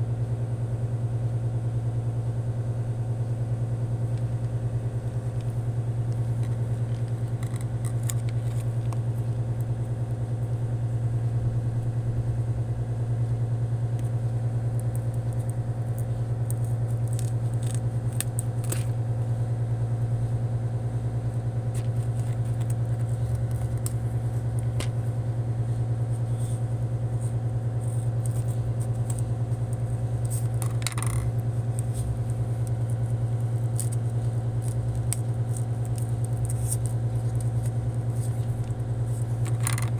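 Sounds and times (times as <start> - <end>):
low motor hum: 0.0 - 39.9
small clicks and crackles: 4.1 - 10.6, 13.3 - 19.4, 21.3 - 39.9.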